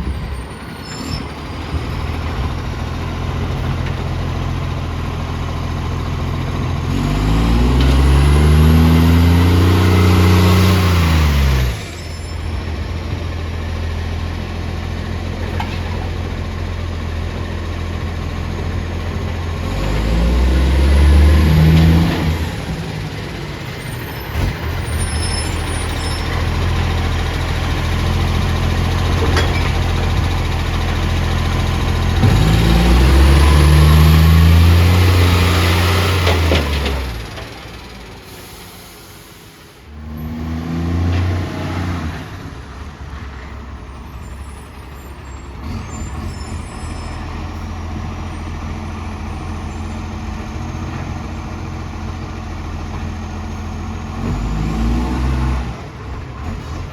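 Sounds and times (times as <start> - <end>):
diesel engine revving: 0.0 - 56.9
exhaust leak hiss: 38.2 - 39.9.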